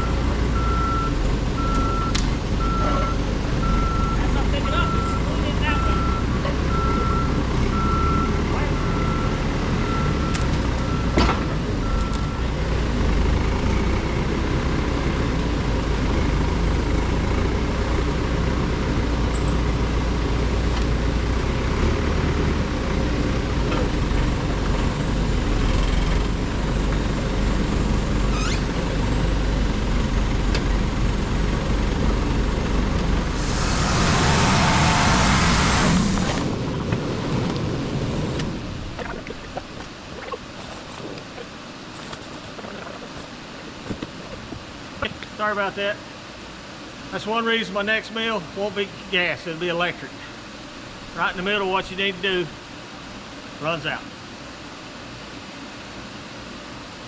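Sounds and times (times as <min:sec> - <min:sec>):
reversing alarm beeping: 0:00.0 - 0:11.2, 0:11.8 - 0:12.5
tractor engine running: 0:00.0 - 0:45.4
loud hiss: 0:33.3 - 0:37.2.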